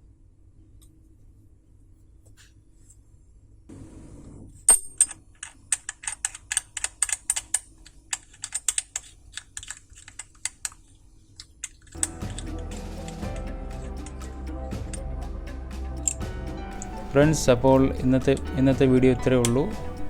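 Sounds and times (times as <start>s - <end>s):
low hum: 12.0s - 20.0s.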